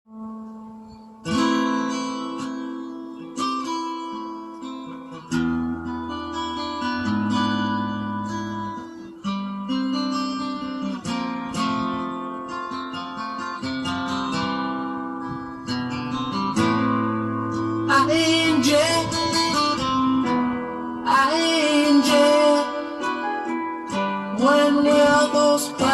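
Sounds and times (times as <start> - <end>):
acoustic guitar chords: 0.1 - 25.9.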